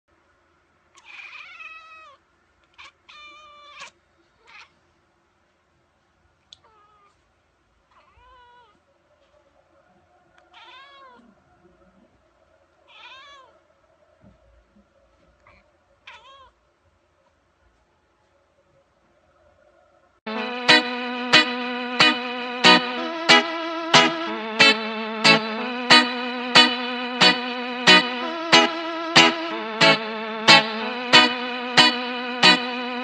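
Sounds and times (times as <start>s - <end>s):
cat meowing: 1.0s - 4.7s, 10.5s - 11.3s, 12.9s - 13.5s, 16.0s - 16.6s.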